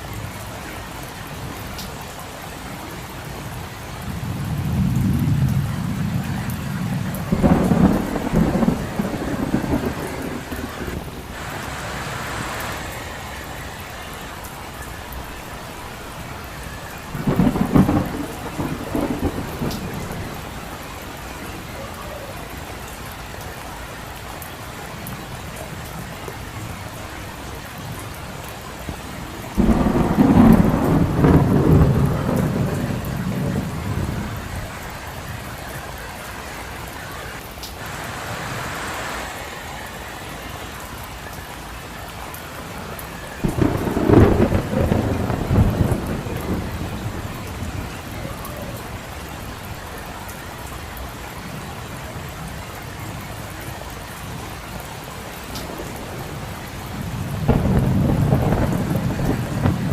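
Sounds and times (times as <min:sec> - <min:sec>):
steady rain: 0:00.0 - 0:59.9
rolling thunder: 0:03.9 - 0:21.8, 0:28.7 - 0:35.7, 0:42.2 - 0:49.6, 0:55.5 - 0:59.9.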